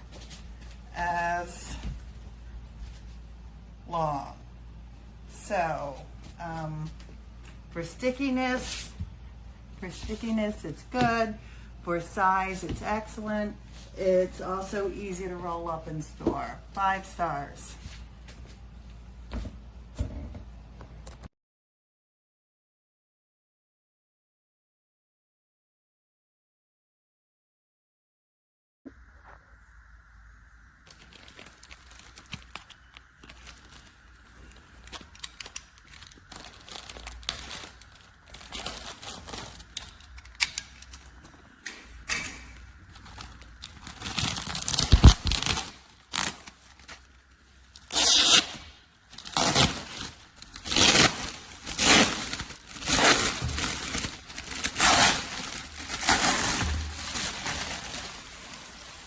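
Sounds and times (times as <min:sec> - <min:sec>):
rustling and crinkling handling: 0:00.0 - 0:03.6, 0:30.9 - 0:41.4, 0:42.6 - 0:48.0, 0:49.0 - 0:59.0.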